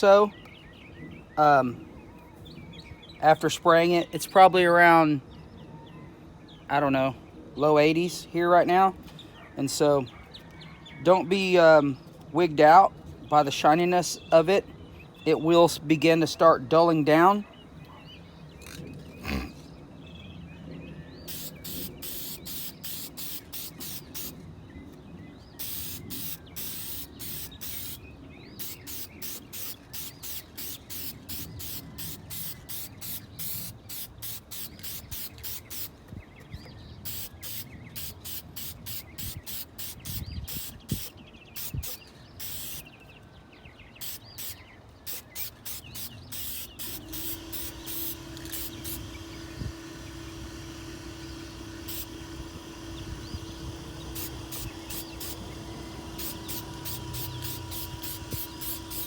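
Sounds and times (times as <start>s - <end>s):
aerosol can spraying: 21.3s - 24.4s, 25.6s - 28.0s, 28.6s - 35.9s, 37.1s - 42.8s, 44.0s - 59.0s.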